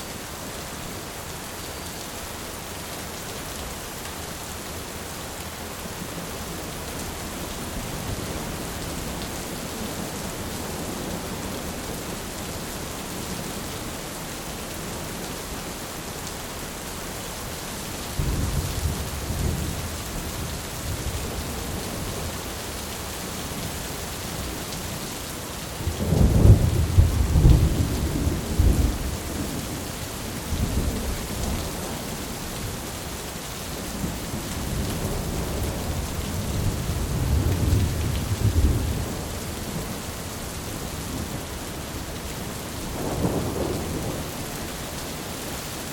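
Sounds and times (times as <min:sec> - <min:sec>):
steady rain: 0:00.0 - 0:45.9.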